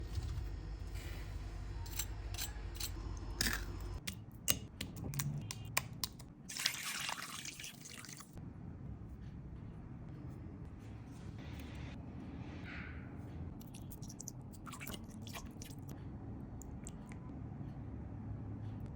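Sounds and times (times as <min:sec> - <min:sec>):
wet splashy food handling: 0:06.5 - 0:08.2, 0:13.6 - 0:15.9.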